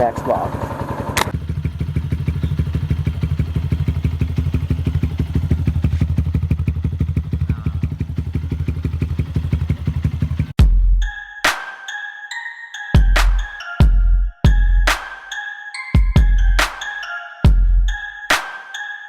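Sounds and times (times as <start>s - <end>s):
motorcycle engine idling: 0.0s - 10.6s.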